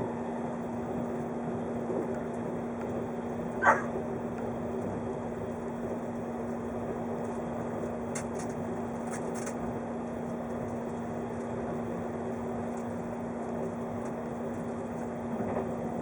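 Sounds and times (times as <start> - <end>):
constant hum: 0.0 - 16.0
train wheels rumbling on rail: 11.8 - 16.0.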